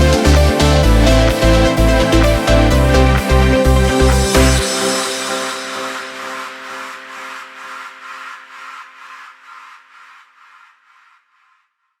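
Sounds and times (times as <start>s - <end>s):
outro music with pulse: 0.0s - 11.0s.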